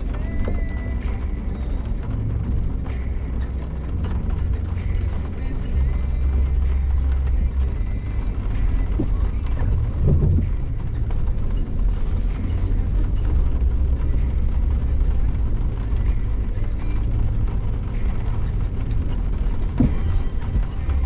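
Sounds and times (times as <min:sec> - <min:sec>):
off-road vehicle driving on dirt: 0:00.0 - 0:21.0
rattling: 0:00.0 - 0:21.0.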